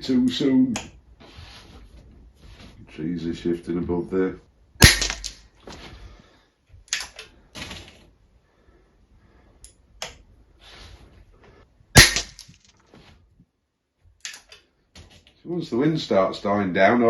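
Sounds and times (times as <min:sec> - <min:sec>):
air rifle shot: 0:04.8 - 0:05.4, 0:12.0 - 0:12.4
rifle handling clicks and rustles: 0:06.8 - 0:08.0, 0:14.2 - 0:15.4.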